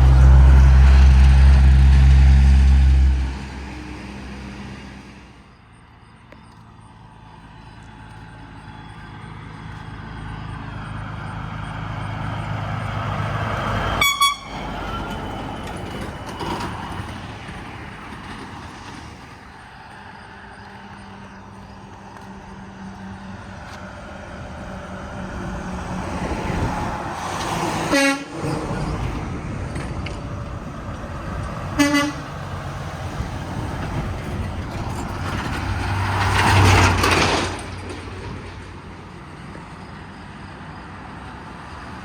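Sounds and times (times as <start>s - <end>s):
truck passing on road: 0.0s - 42.0s
short high-pitched horn toot: 14.0s - 14.7s.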